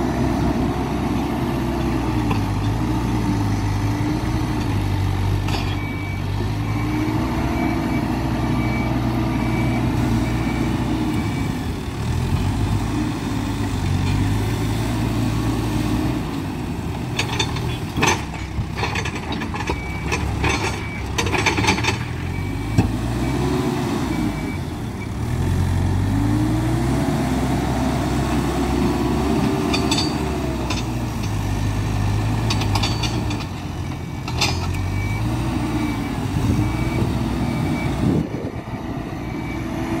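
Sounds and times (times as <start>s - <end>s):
diesel engine revving: 0.0s - 40.0s
reversing alarm beeping: 5.5s - 11.8s, 18.8s - 25.2s, 32.5s - 40.0s.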